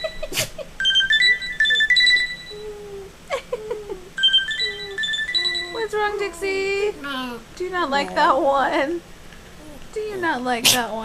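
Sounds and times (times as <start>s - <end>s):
phone ringtone beeping melody: 0.8s - 2.8s, 4.2s - 6.9s
dog howling and yelping: 2.4s - 8.3s.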